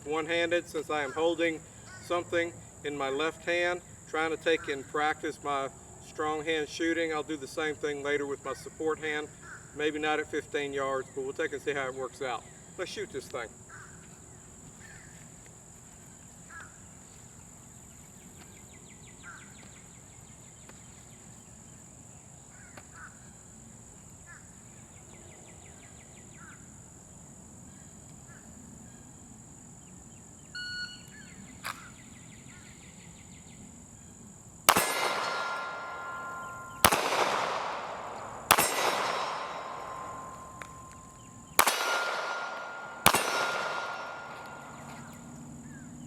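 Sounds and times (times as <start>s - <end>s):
steel target ringing: 34.7s - 45.1s
pistol shots: 34.7s - 45.3s.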